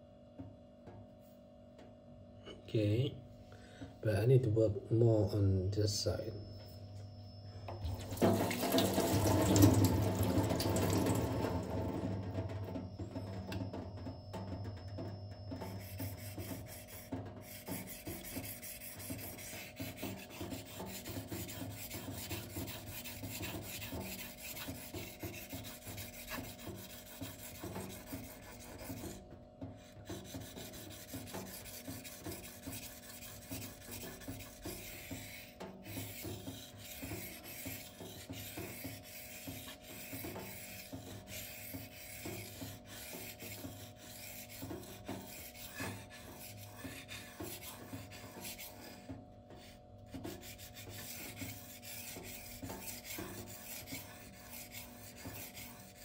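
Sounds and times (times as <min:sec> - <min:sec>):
knife blade rasping on whetstone: 0:15.6 - 0:29.2, 0:30.0 - 0:56.0.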